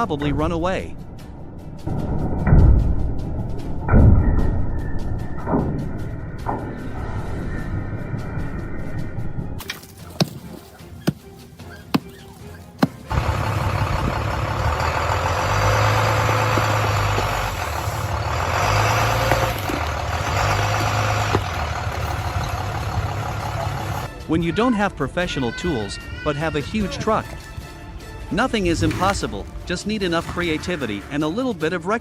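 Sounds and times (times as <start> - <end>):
heavy engine running: 12.8 - 24.1.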